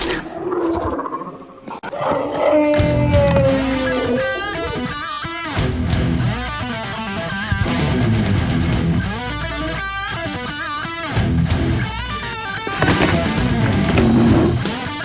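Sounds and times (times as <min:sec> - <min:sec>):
low bass: 0:05.6 - 0:06.4, 0:07.6 - 0:09.3.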